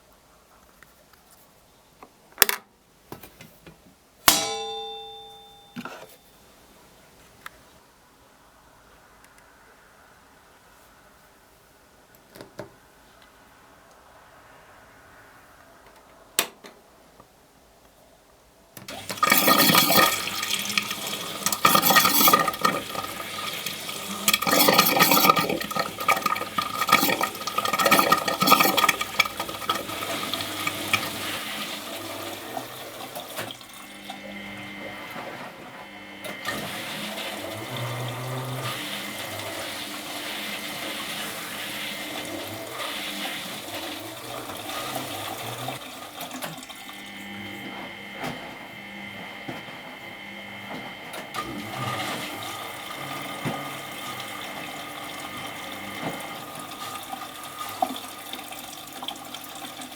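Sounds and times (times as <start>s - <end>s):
water rushing into washing machine: 18.8s - 59.9s.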